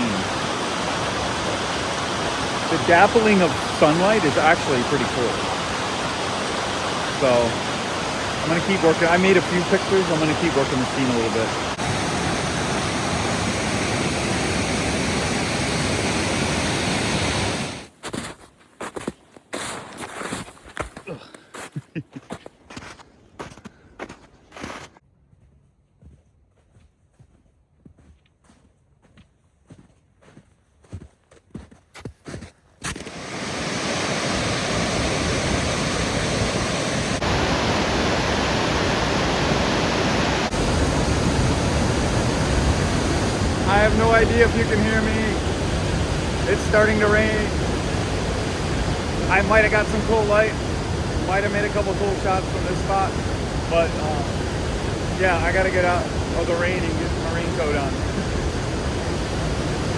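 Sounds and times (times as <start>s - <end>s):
waterfall rushing: 0.0s - 17.9s, 33.0s - 59.9s
soft footsteps: 17.9s - 33.1s.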